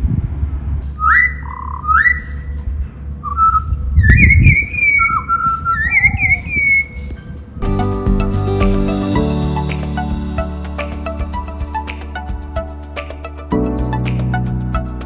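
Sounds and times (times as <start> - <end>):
bird whistling: 0.8 - 2.6, 3.2 - 7.2.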